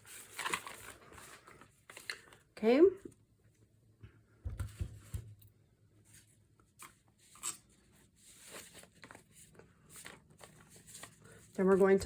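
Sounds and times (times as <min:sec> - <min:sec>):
paper rustles and taps: 0:04.4 - 0:05.4.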